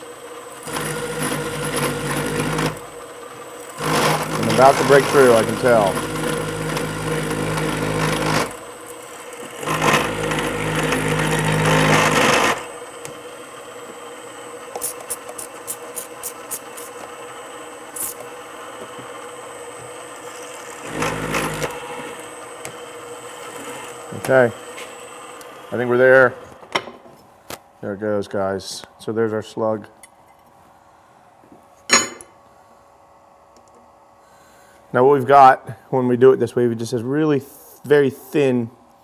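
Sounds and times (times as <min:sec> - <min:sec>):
drill press running: 0:00.0 - 0:26.8
hole saw grinding through steel: 0:00.6 - 0:03.0, 0:03.7 - 0:08.6, 0:09.5 - 0:12.9, 0:20.2 - 0:25.8.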